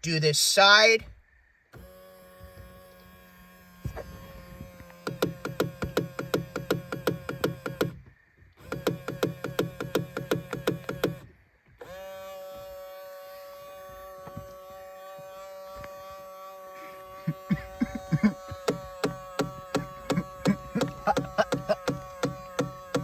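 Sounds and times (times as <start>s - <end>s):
rapid buzzing clicks: 1.3s - 23.0s
mirror motor humming: 1.7s - 8.0s, 8.6s - 23.0s.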